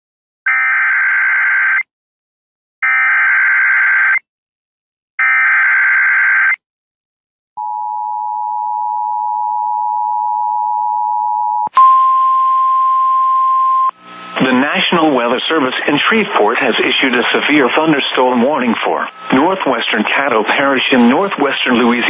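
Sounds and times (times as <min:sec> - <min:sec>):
single steady tone: 0:07.6 - 0:14.0
two-tone attention signal: 0:11.7 - 0:14.0.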